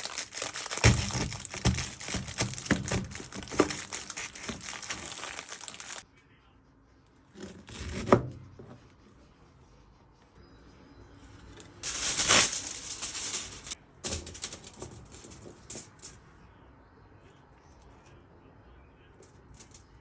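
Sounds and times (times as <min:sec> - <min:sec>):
aluminium foil crinkling: 0:00.0 - 0:06.0, 0:11.8 - 0:16.0.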